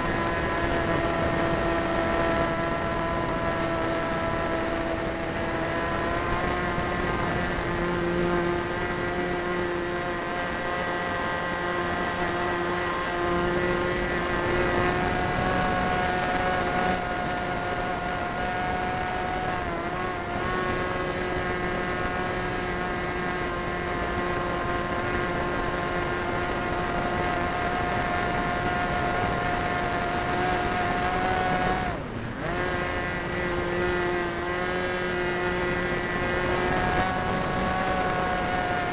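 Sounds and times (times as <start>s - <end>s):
model plane engine high-pitched drone: 0.0s - 38.9s.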